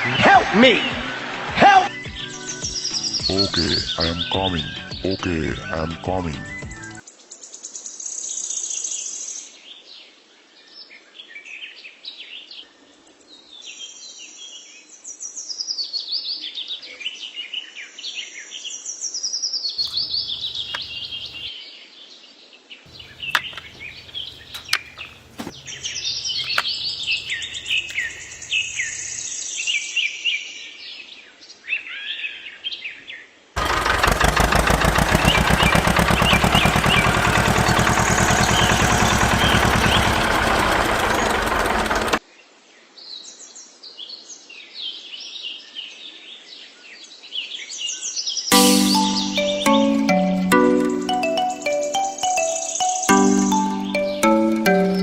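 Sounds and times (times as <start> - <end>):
small birds chirping: 1.9 - 7.0, 19.8 - 21.5, 22.9 - 29.5, 33.6 - 42.2
loud steady motor noise: 19.8 - 21.5, 22.9 - 29.1, 33.6 - 42.2
sharp clicks: 22.9 - 29.1.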